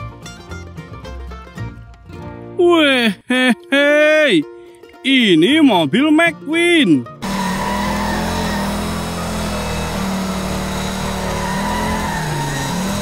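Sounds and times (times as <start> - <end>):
race car engine drone: 7.2 - 13.0.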